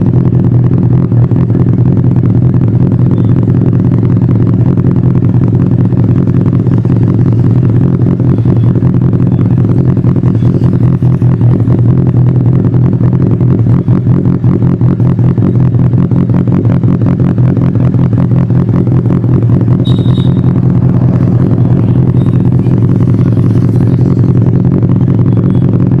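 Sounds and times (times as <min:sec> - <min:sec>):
motorcycle engine idling: 0:00.0 - 0:26.0.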